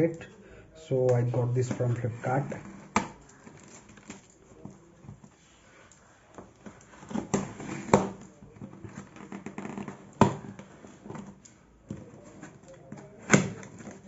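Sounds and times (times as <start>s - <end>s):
packaging rustling and scraping: 1.2s - 11.4s.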